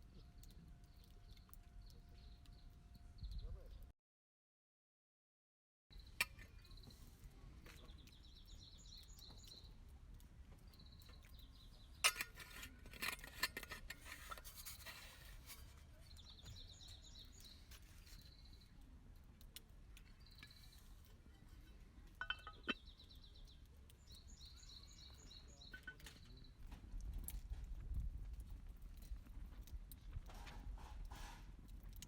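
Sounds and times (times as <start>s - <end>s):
bird singing trilled phrases: 7.8s - 9.8s, 10.6s - 12.0s, 16.0s - 18.8s, 20.0s - 20.9s, 22.2s - 26.7s
small utensils clinking: 11.8s - 16.2s, 20.3s - 22.8s.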